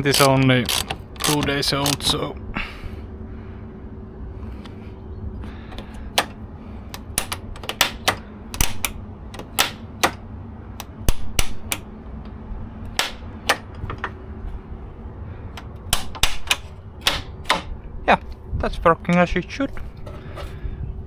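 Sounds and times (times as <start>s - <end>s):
sharp mechanism clicks and snaps: 0.0s - 2.2s, 5.7s - 10.2s, 10.8s - 11.9s, 12.9s - 14.0s, 15.6s - 17.7s
low rumble: 0.0s - 21.0s.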